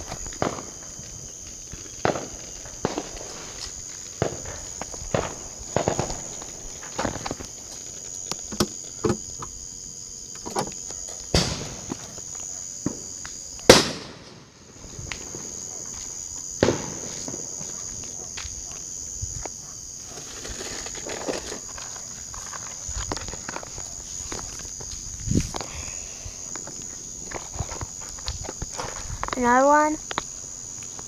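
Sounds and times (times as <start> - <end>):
distant fireworks bangs: 0.0 - 7.8, 11.0 - 19.0
insects chirring: 0.0 - 31.0.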